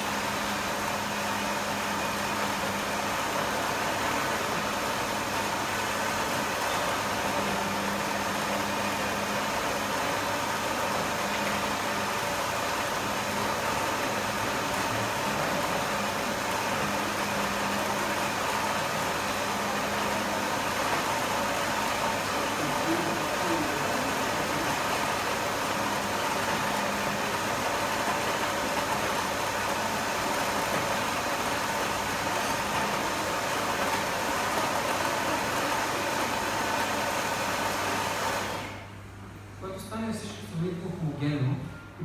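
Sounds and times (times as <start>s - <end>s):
food processor grinding: 0.0s - 38.8s.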